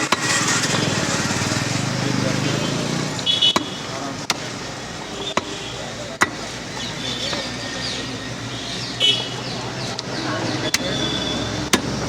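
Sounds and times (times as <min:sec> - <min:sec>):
market background: 0:00.0 - 0:12.0
cleaver chopping meat: 0:03.3 - 0:04.7, 0:05.3 - 0:07.5, 0:10.0 - 0:12.0.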